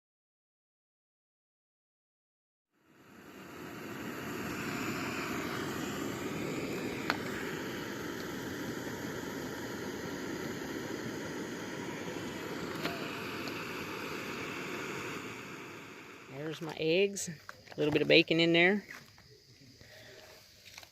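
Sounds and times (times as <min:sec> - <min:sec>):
stove burner roaring: 0:02.8 - 0:17.0.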